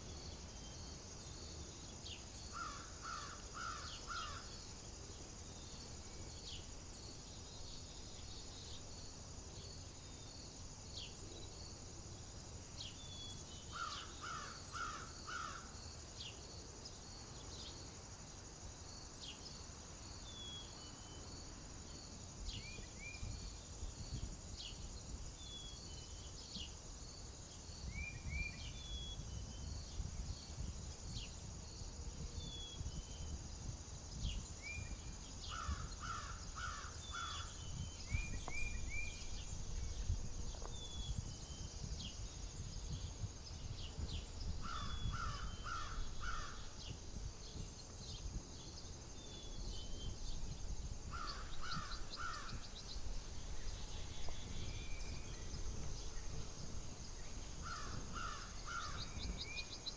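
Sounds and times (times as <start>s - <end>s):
wind on microphone: 27.8s - 59.9s
small birds chirping: 34.2s - 59.9s.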